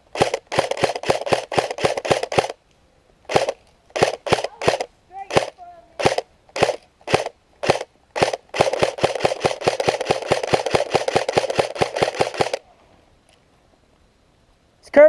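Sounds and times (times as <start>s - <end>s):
airsoft gun firing: 0.0s - 2.6s, 3.3s - 12.6s.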